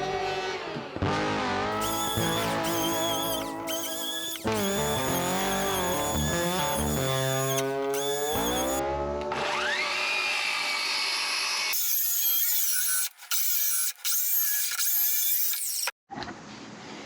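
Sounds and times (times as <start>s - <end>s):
power tool whining on wood: 1.8s - 8.8s, 9.4s - 15.9s.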